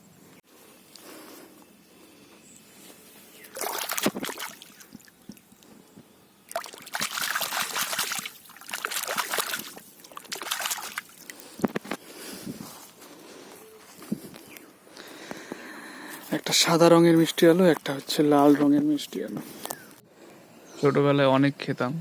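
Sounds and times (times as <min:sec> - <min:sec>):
water splashing and sloshing: 0:03.4 - 0:05.6, 0:06.5 - 0:12.0.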